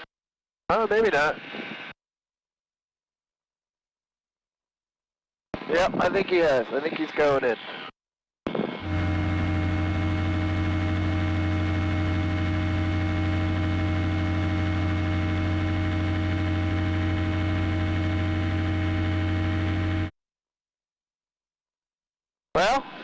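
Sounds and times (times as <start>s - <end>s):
aircraft engine droning: 8.8s - 20.1s.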